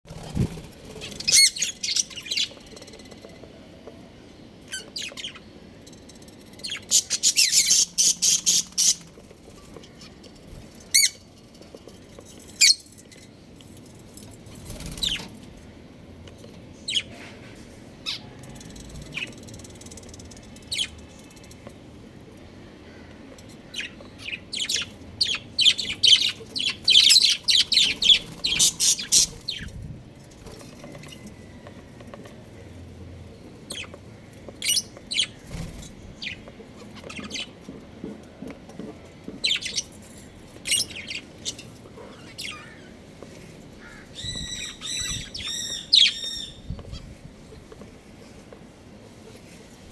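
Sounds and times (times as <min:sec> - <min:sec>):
budgerigars chirping: 0:06.6 - 0:09.0, 0:23.7 - 0:29.7, 0:43.8 - 0:46.7.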